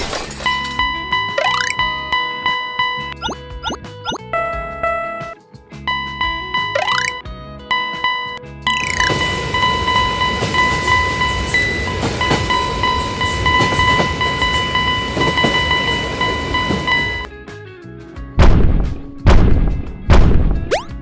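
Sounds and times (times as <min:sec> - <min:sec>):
steady high tone: 0:01.3 - 0:04.2, 0:06.8 - 0:10.3
train rumble: 0:09.4 - 0:17.2.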